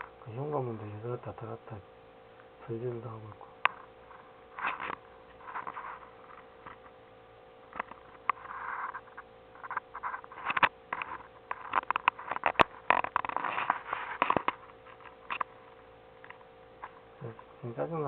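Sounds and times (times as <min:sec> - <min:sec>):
faint electrical hum: 0:00.0 - 0:18.0
scraping rustles: 0:03.8 - 0:07.0, 0:07.7 - 0:15.5.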